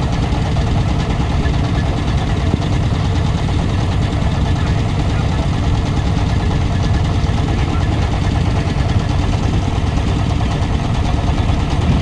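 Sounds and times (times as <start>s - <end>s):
boat engine droning: 0.0s - 12.0s.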